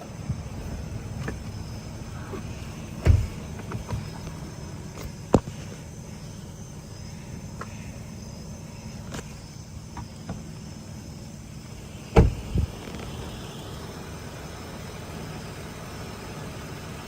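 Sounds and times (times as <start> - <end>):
low engine hum: 0.0 - 17.0
night insects trilling: 0.0 - 17.0
double thump: 0.2 - 5.5, 12.1 - 13.1.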